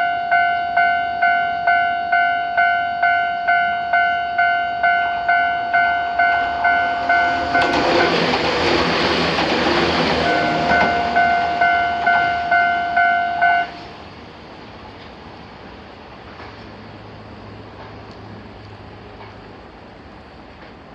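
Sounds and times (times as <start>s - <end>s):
two-tone level crossing bell: 0.0s - 8.1s, 10.2s - 13.8s
train passing: 0.0s - 20.9s.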